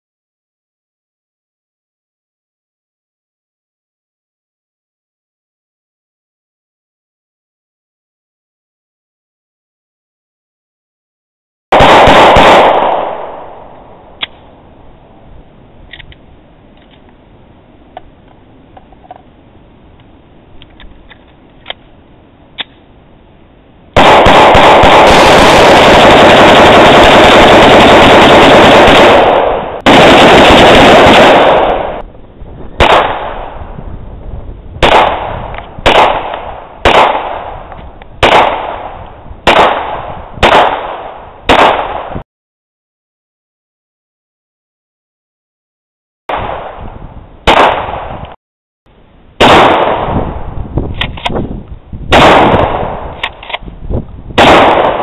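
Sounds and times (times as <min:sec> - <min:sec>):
gunshots: 0:11.7 - 0:14.4, 0:24.0 - 0:32.0, 0:32.8 - 0:33.6, 0:34.8 - 0:42.2, 0:46.3 - 0:48.3, 0:49.4 - 0:50.4, 0:52.1 - 0:53.6, 0:54.4 - 0:55.0.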